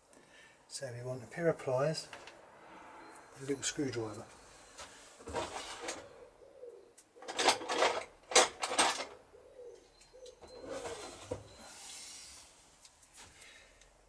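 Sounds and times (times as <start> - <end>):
metal hand tools clattering: 7.2 - 9.2.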